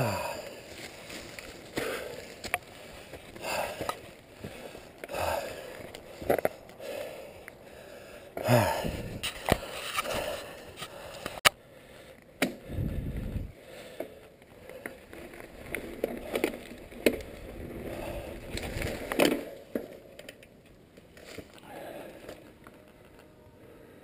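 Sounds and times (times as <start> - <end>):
tyre noise on dirt: 0.0 - 7.3, 12.4 - 20.0
wind rumble on microphone: 8.7 - 9.3, 12.6 - 13.6.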